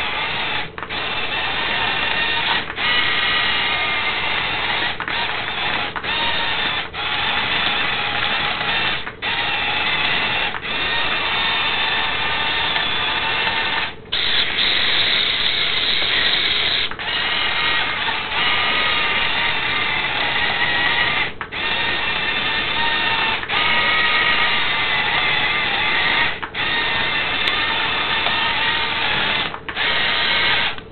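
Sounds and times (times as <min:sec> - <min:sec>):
small electric motors whining: 0:00.0 - 0:30.9.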